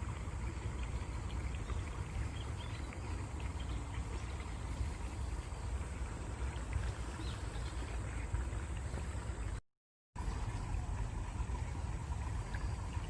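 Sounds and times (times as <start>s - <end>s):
small water splashes: 0.0s - 9.6s, 10.2s - 13.0s
stream running water: 0.0s - 9.6s, 10.2s - 13.0s.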